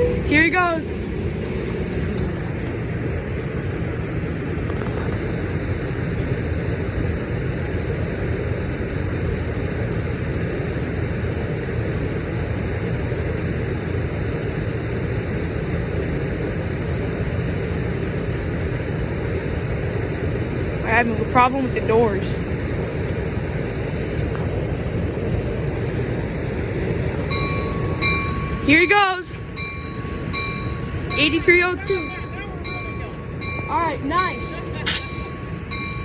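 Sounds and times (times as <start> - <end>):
diesel train engine rumbling: 0.0 - 36.0.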